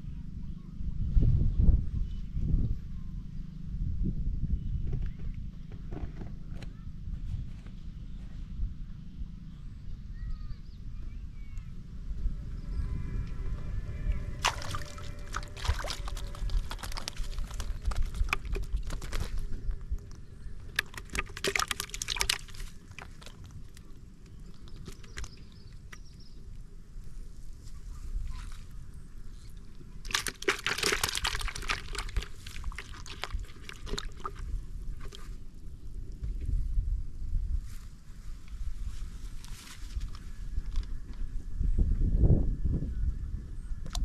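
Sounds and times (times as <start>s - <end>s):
low steady rumble: 0.0s - 44.0s
water splashing and sloshing: 14.3s - 26.1s, 29.7s - 35.4s.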